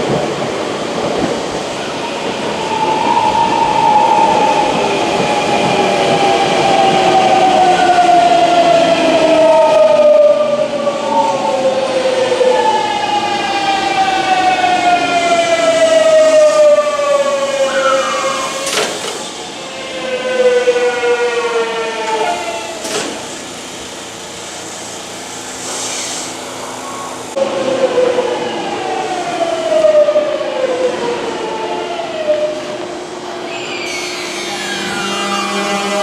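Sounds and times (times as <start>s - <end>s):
electric train inverter whine: 0.0s - 36.0s.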